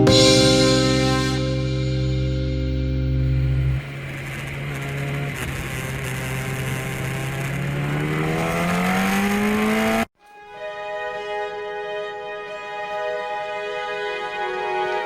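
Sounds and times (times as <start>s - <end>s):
music: 0.0s - 3.8s, 10.2s - 15.0s
engine-like sound rising in pitch: 0.0s - 10.0s.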